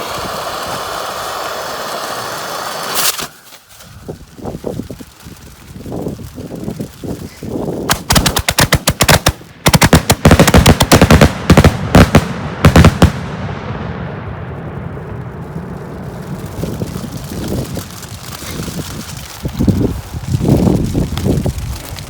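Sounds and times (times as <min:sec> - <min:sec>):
fireworks rumble: 0:00.0 - 0:22.0
fireworks bangs: 0:07.8 - 0:21.7.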